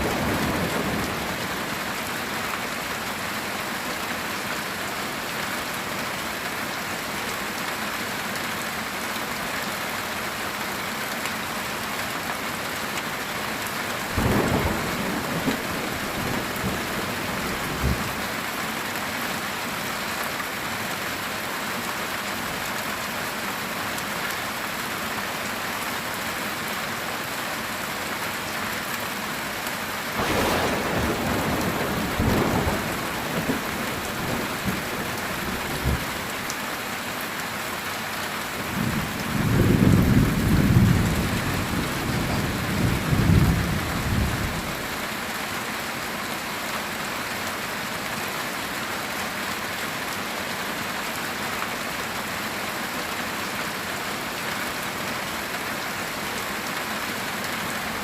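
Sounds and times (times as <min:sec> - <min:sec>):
heavy rain on a tin roof: 0:00.0 - 0:58.0
thunder: 0:14.2 - 0:18.2, 0:30.2 - 0:36.1.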